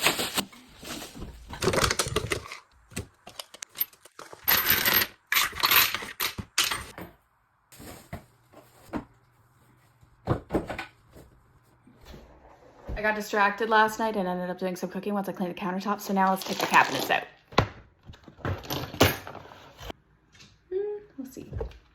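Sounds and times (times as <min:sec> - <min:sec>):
household items clattering: 0:00.0 - 0:09.2, 0:16.3 - 0:19.9.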